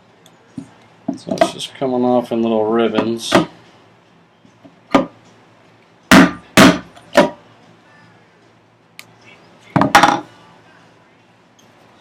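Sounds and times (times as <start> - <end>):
mallet striking chisel: 6.1 - 7.4.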